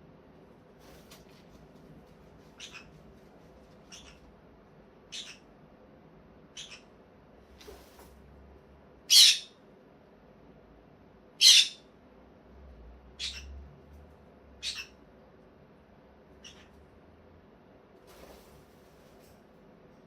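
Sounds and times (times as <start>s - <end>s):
parrot squeaking: 2.6s - 2.9s, 3.9s - 4.2s, 5.1s - 5.5s, 6.6s - 6.9s, 9.1s - 9.6s, 11.4s - 11.8s, 13.2s - 13.5s, 14.6s - 15.0s, 16.4s - 16.7s.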